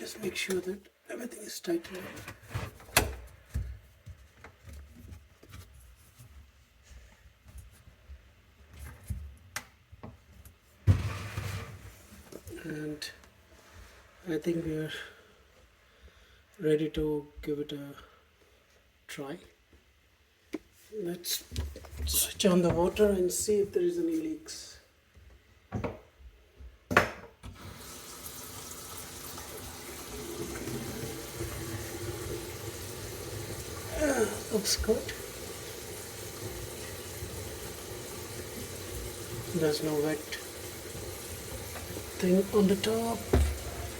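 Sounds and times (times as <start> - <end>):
faucet running into sink: 27.5 - 43.9.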